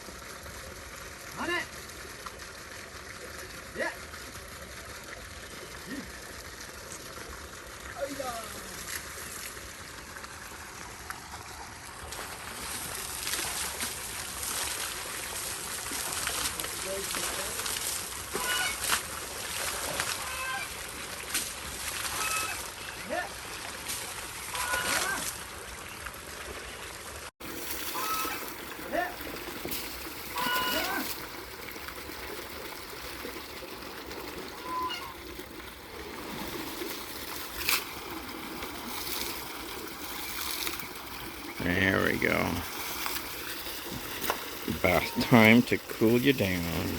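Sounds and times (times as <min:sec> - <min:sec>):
water splashing and trickling: 0:00.0 - 0:46.9
short high squeak: 0:30.4 - 0:31.0.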